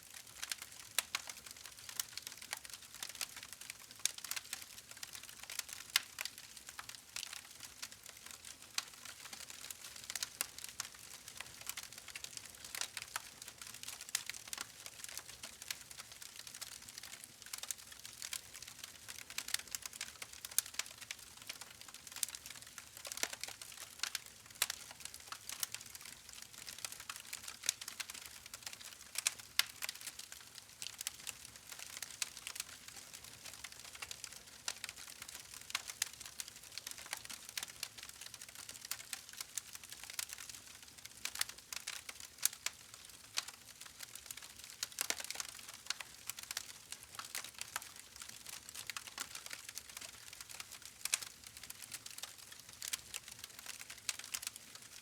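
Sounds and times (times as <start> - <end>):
campfire crackling: 4.2 - 33.0.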